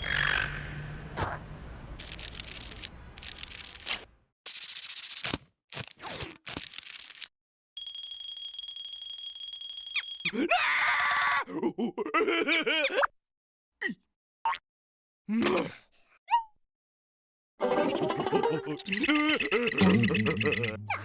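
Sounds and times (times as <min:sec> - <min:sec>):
short crackling noises: 0:02.0 - 0:04.1.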